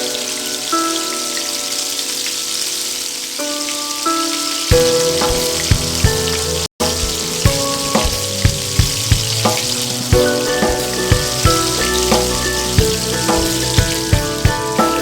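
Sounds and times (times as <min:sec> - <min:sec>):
wings sizzling in hot oil: 0:00.0 - 0:15.0
plucked background music with beat: 0:04.7 - 0:15.0.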